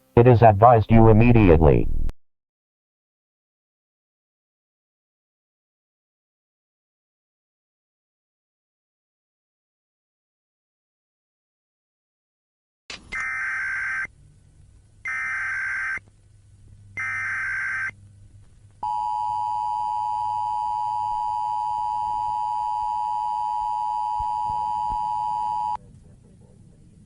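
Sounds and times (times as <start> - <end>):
steady two-tone attention signal: 18.8 - 25.8.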